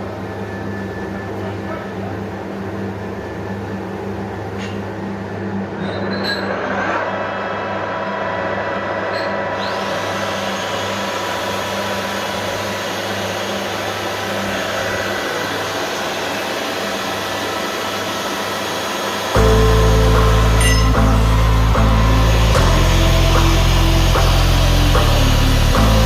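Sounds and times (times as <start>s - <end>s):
steady tones: 7.0s - 26.0s
polishing machine motor hum: 9.4s - 26.0s.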